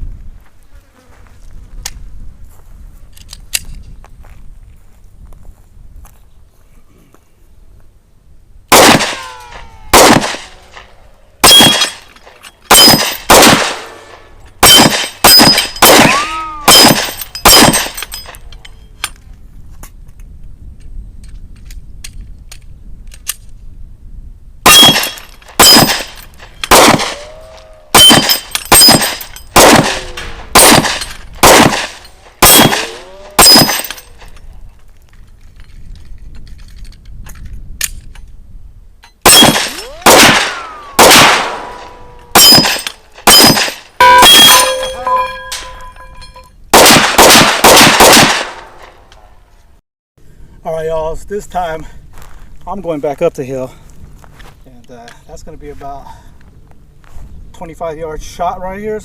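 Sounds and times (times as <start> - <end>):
pistol shots: 8.7 - 12.0, 12.7 - 18.0, 24.6 - 27.3, 27.9 - 34.0, 39.2 - 45.3, 46.7 - 48.9
brief metallic ring: 44.0 - 46.6.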